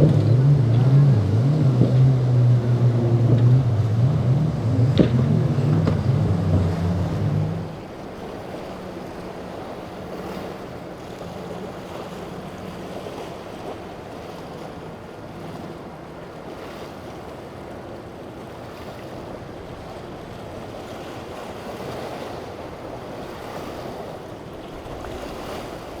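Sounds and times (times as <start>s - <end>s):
wind buffeting the microphone: 0.0s - 9.6s
faint boat engine hum: 0.0s - 26.0s
waves and surf: 0.0s - 26.0s.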